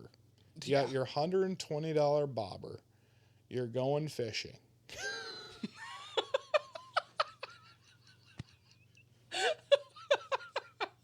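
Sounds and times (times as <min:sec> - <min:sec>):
people laughing breathily: 0:05.0 - 0:11.0.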